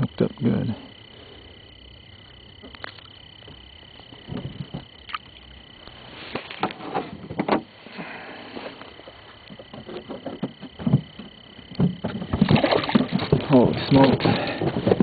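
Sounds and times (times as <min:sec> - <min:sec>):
high-pitched whine: 0:00.0 - 0:15.0
knocks and clatters in boat: 0:06.6 - 0:07.7, 0:09.5 - 0:15.0.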